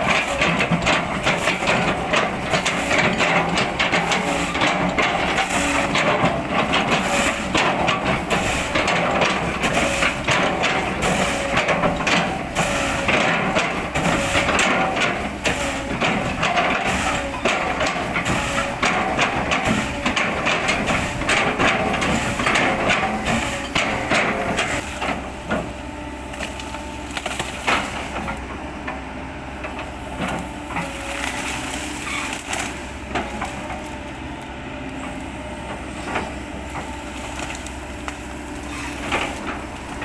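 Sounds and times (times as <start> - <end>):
excavator engine under load: 0.0 - 40.0.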